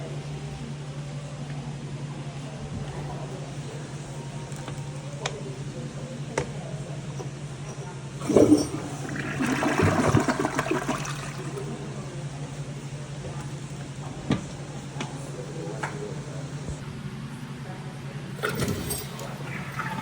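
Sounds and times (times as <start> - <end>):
steady low hum: 0.0 - 20.0
toilet flushing: 7.2 - 16.2, 18.0 - 20.0.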